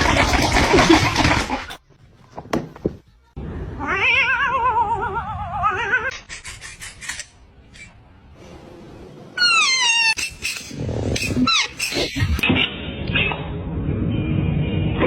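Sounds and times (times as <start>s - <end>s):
cat meowing: 3.8s - 6.1s.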